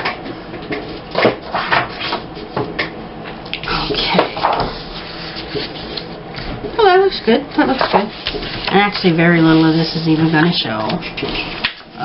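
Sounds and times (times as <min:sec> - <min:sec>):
paper rustling and sliding: 0:04.4 - 0:06.2, 0:07.8 - 0:10.0.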